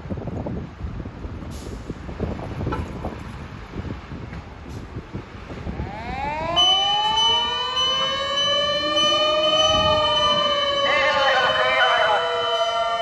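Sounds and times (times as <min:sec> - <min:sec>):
traffic noise: 0:00.0 - 0:13.0
fire engine sirens wailing: 0:05.6 - 0:13.0
steady high tone: 0:06.1 - 0:13.0.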